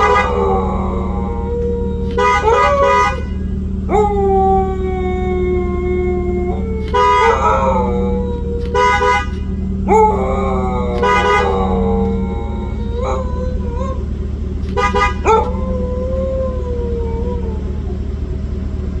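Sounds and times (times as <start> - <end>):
car horn honks: 0.0 - 4.3, 5.6 - 15.8
dog howling: 0.0 - 18.9.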